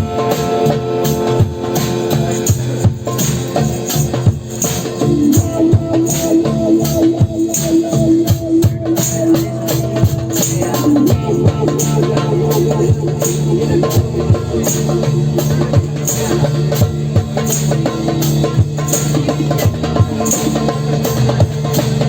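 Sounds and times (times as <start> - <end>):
psytrance music: 0.0 - 20.3.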